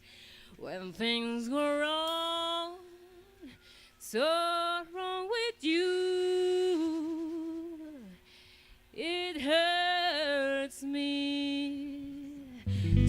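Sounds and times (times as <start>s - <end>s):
electric guitar and bass chord: 12.7s - 13.0s.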